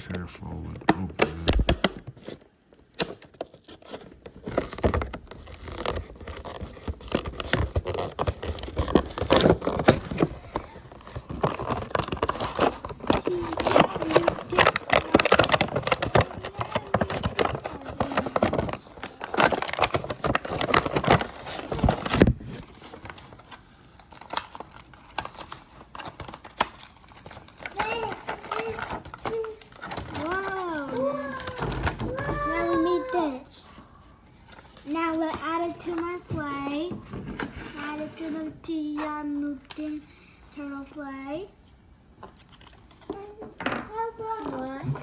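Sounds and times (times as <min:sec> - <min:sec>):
packaging crinkling and tearing: 0:00.6 - 0:33.4, 0:42.2 - 0:43.4, 0:44.0 - 0:45.0.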